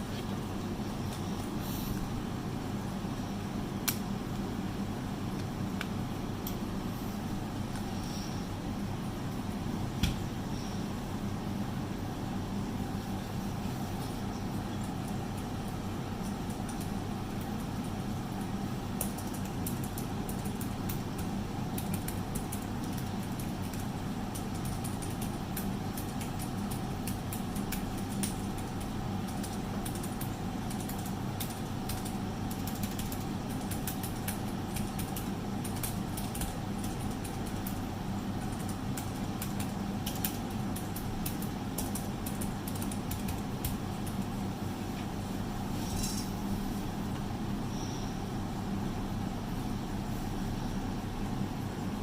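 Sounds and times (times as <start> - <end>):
steady hum: 0.0 - 52.0.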